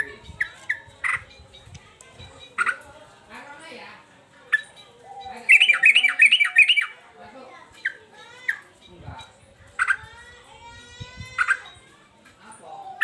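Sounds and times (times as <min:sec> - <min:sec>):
bulbul singing: 0:04.5 - 0:07.0.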